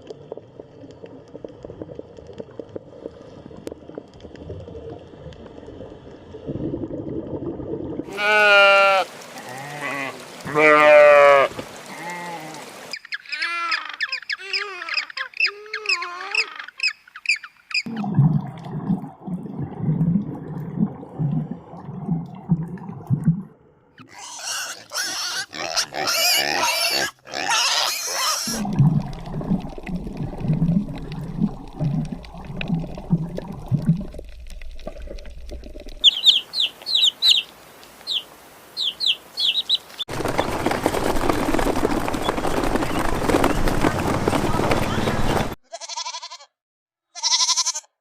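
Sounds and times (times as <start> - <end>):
loud harsh animal call: 8.1 - 9.1.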